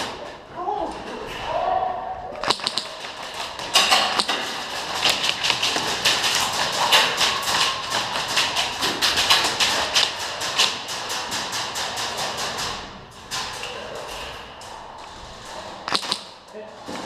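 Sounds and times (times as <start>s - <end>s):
airsoft guns firing rapidly: 2.4s - 12.6s.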